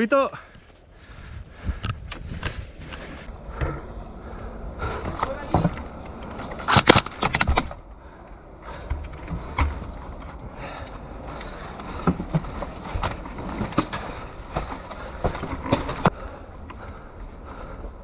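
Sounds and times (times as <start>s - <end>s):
low rumbling background noise: 0.0s - 18.0s
sharp knocks and cracks: 5.2s - 7.8s.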